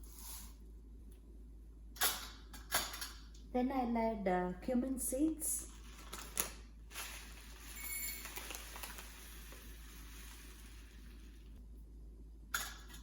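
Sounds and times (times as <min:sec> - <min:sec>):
seeds pouring into metal container: 0:06.9 - 0:11.6.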